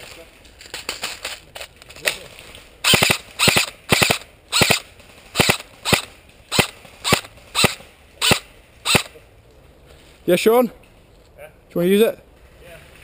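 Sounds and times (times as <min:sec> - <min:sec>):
airsoft rifle shots: 0:02.8 - 0:09.2.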